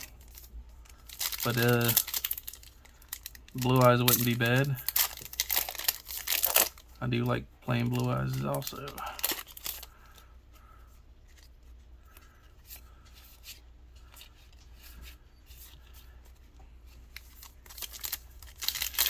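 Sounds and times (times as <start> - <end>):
trading cards rustling: 0.0 - 10.2, 11.2 - 19.0
foil wrappers crinkling: 0.0 - 10.3, 17.1 - 19.0.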